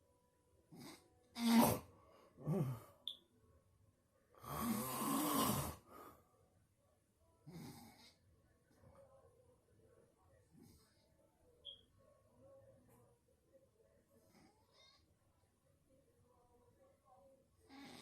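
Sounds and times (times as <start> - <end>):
loud snoring: 4.4 - 5.8.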